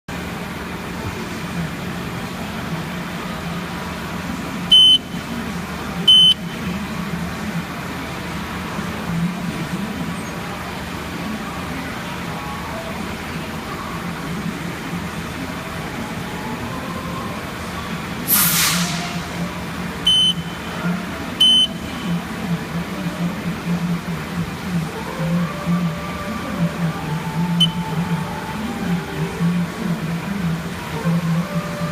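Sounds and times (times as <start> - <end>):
high electronic beeps: 4.7 - 5.2, 6.1 - 6.4, 20.1 - 20.7, 21.4 - 22.2
air hiss: 18.3 - 19.5.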